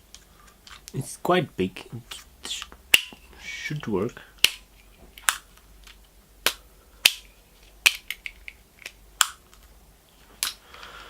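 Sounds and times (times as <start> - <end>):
sharp clicks of small hard parts: 2.6 - 3.2, 4.4 - 9.7.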